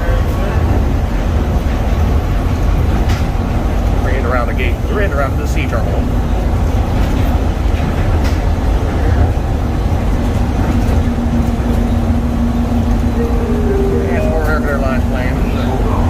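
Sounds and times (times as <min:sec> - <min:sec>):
train rumbling: 0:00.0 - 0:16.0
steady humming tone: 0:12.0 - 0:16.0.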